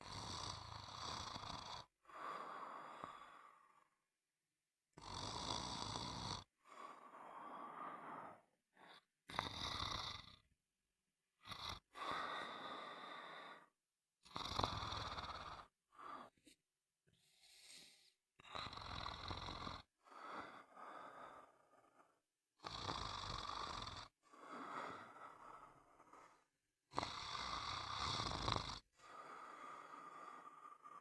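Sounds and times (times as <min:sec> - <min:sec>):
person snoring: 0:00.0 - 0:04.0, 0:04.9 - 0:10.5, 0:11.4 - 0:16.6, 0:17.2 - 0:31.0
soft trailing breath: 0:16.0 - 0:18.2.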